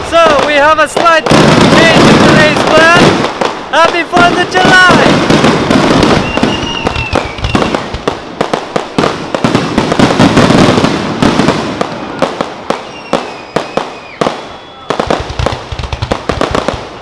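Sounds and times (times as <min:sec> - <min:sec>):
fireworks crackling and banging: 0:00.0 - 0:17.0
firework whistle: 0:06.0 - 0:08.2, 0:11.7 - 0:15.4.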